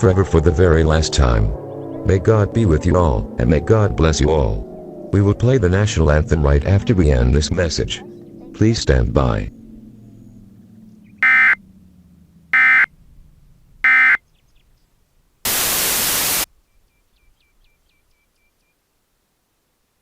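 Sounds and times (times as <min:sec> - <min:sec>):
loud static hiss: 0:15.4 - 0:16.5
digital data bursts: 0:15.5 - 0:16.5.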